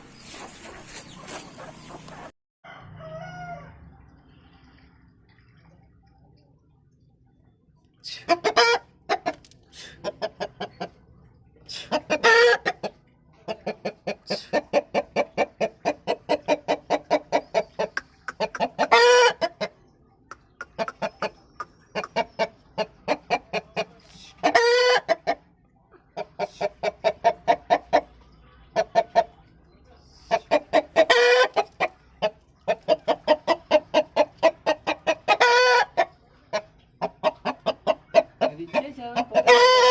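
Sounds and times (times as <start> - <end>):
chickens clucking rapidly: 0.0 - 2.3, 8.2 - 11.1, 11.8 - 29.5, 30.1 - 39.9
loud long chicken calls: 0.2 - 3.8, 17.0 - 19.5, 30.5 - 32.0, 34.4 - 36.2, 39.3 - 39.9.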